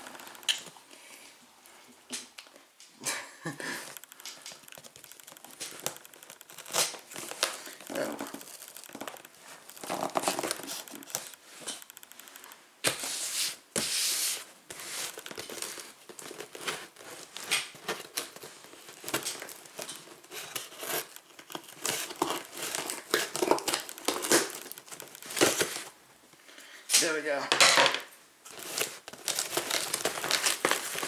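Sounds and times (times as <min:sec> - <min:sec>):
packaging tearing and crinkling: 0:04.0 - 0:12.4, 0:14.7 - 0:26.0, 0:28.5 - 0:31.0.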